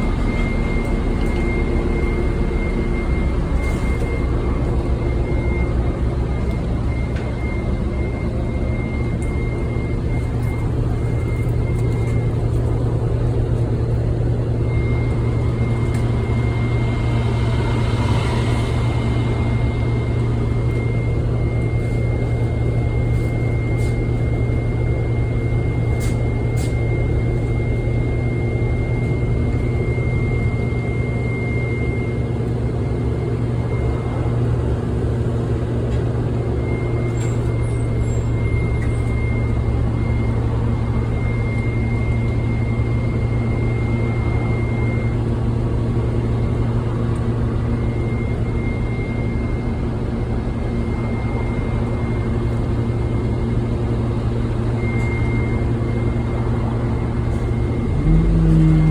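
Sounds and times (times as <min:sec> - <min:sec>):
bus engine drone: 0:00.0 - 0:58.9.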